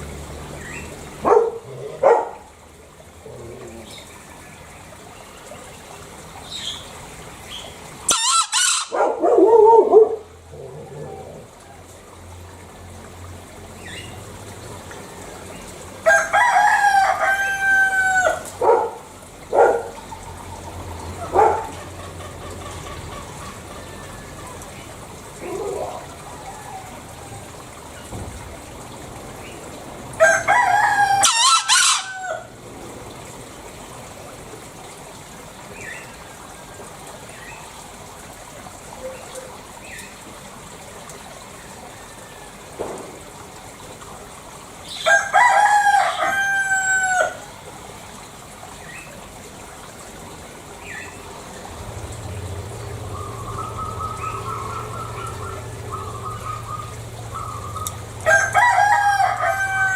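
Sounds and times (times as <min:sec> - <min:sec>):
rooster crowing: 0:08.1 - 0:09.9, 0:16.0 - 0:18.5, 0:30.2 - 0:32.6, 0:45.0 - 0:47.5, 0:58.2 - 0:59.9.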